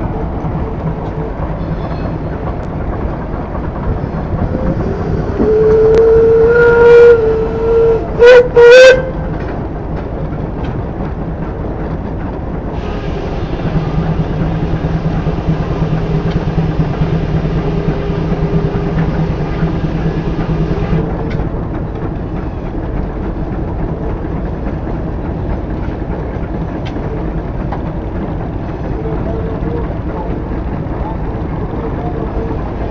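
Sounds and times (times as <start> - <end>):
sawmill machinery rumble: 0.0 - 32.9
steam whistle: 4.4 - 9.3
hiss: 12.8 - 21.0
steady hum: 12.8 - 21.4.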